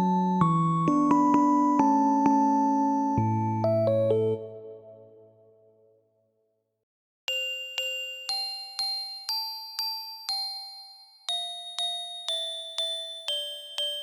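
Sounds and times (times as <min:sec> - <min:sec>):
glockenspiel-like chime melody: 0:07.3 - 0:14.0.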